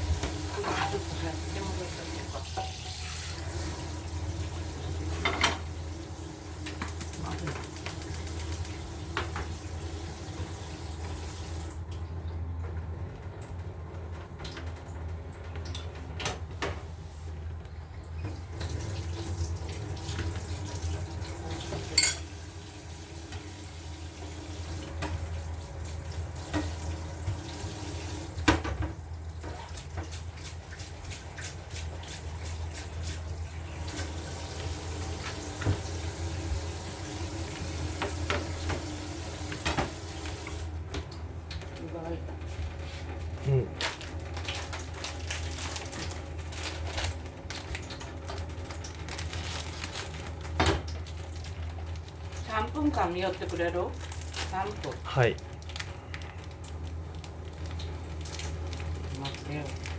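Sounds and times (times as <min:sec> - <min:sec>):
tap water running into sink: 0:00.0 - 0:12.1, 0:18.1 - 0:42.0
dishes clinking: 0:02.5 - 0:03.0, 0:21.8 - 0:22.4.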